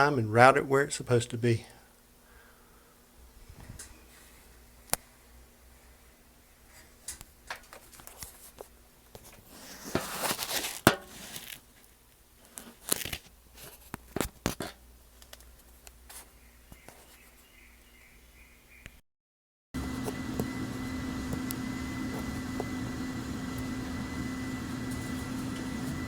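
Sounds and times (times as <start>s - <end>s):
rustling tearing: 9.2s - 16.3s.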